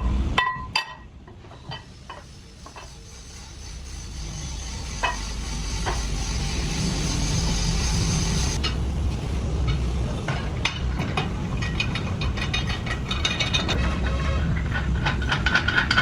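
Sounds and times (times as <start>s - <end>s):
air hiss: 1.8s - 8.6s
low steady rumble: 2.0s - 16.0s.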